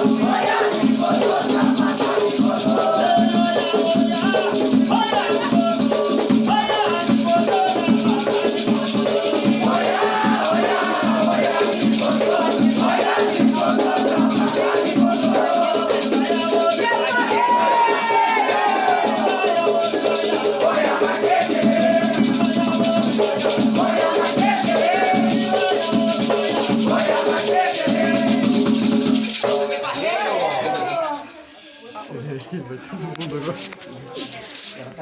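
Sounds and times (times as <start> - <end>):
shaken rattles: 0.0 - 17.4, 18.5 - 31.3
voices singing: 0.0 - 35.0.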